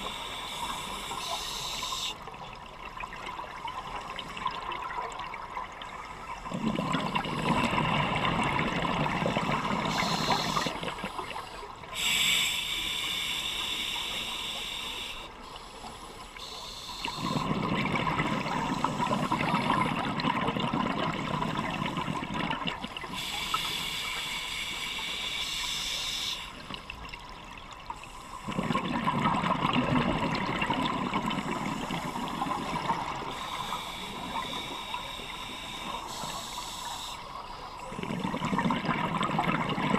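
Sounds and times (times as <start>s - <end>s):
hissing regulator inhalations: 0.0s - 2.2s, 9.7s - 20.0s, 22.9s - 26.8s, 31.1s - 38.2s.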